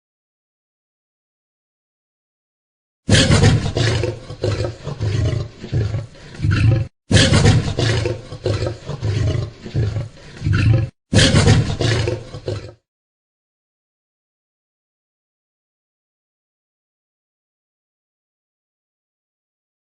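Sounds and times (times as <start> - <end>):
big cat grunting roars: 3.1 - 12.8.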